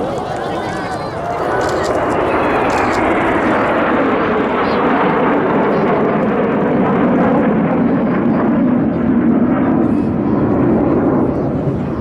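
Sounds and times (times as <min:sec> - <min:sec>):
jet engine noise: 0:00.0 - 0:12.0.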